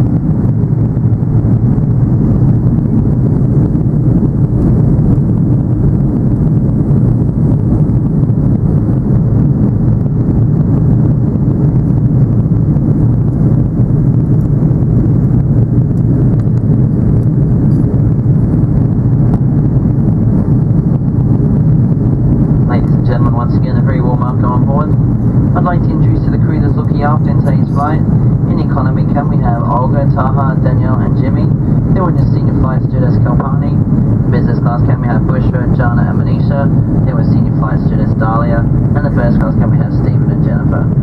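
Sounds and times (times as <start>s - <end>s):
air rushing past fuselage: 0.0s - 41.0s
aircraft cabin engine rumble: 0.0s - 41.0s.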